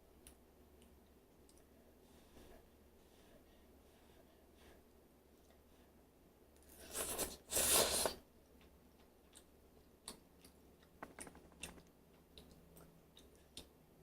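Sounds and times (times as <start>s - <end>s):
soft chewing and mouth clicks: 0.1s - 2.7s, 4.9s - 5.7s, 6.6s - 14.0s
noodles being slurped: 6.7s - 8.2s.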